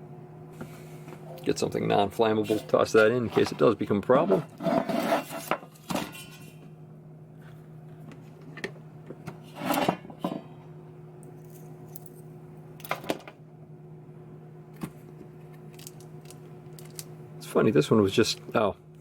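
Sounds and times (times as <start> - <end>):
electrical hum: 0.0 - 19.0
objects clattering on workbench: 3.2 - 3.7, 4.3 - 6.6, 8.4 - 10.5.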